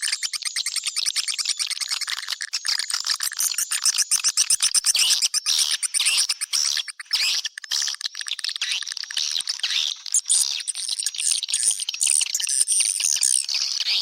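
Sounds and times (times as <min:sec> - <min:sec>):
swiftlets clicking and twittering: 0:00.0 - 0:09.6.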